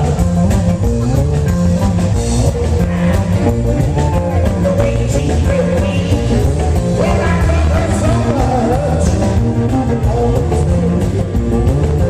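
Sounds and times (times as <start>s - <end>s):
drum beat: 0.0s - 11.0s
bass line: 0.0s - 12.0s
rock band playing: 0.0s - 12.0s.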